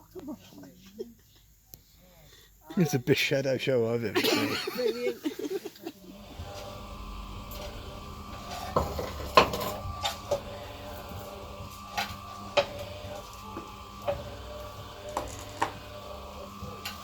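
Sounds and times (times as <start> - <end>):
steady low hum: 6.1 - 17.0
dishes clinking and knocking: 8.6 - 9.8.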